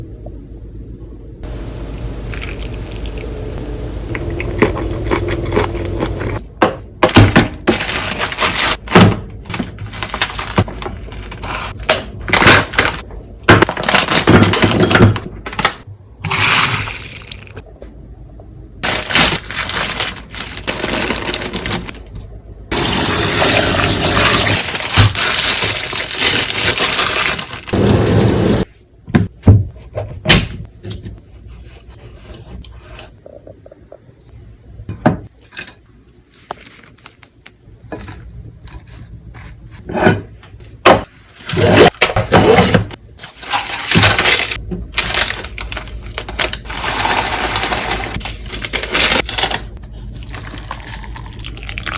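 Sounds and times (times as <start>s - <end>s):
loud steady hiss: 1.4s - 4.5s.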